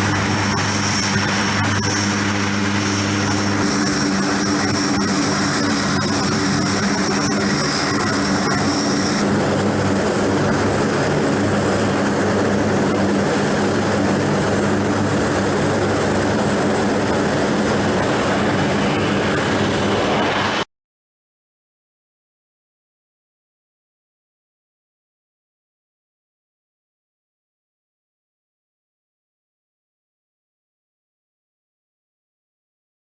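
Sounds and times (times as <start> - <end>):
aircraft engine drone: 0.0 - 20.7
high whine: 0.0 - 20.7
low hum: 0.0 - 20.7.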